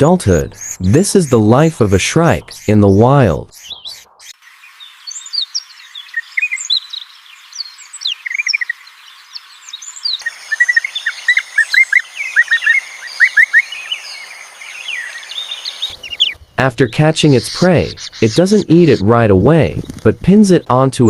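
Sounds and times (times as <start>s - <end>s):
birds chirping: 0.0s - 21.0s.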